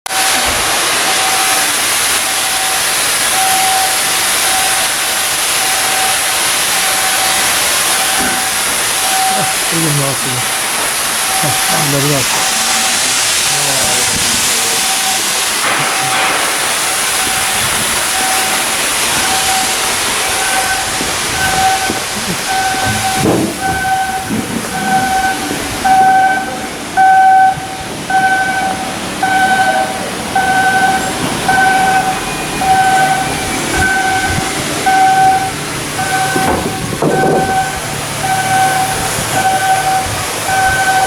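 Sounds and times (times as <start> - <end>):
steady hiss: 0.2 - 27.0
electronic warning beeper: 1.2 - 10.6, 11.2 - 41.0.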